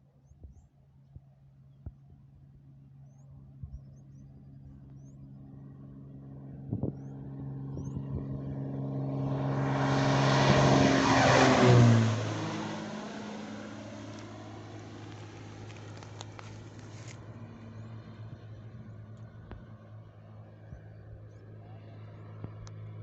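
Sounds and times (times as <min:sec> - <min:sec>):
propeller plane flying past: 0:00.0 - 0:23.0.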